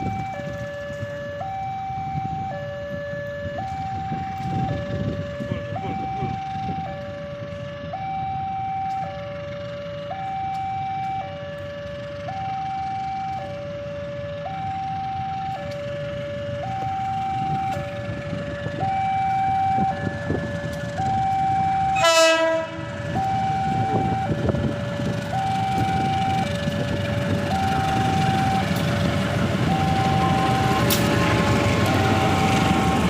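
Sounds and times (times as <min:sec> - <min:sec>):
diesel locomotive rumble: 0:00.0 - 0:33.0
two-tone warning alarm: 0:00.0 - 0:33.0
deep locomotive horn blast: 0:17.2 - 0:33.0.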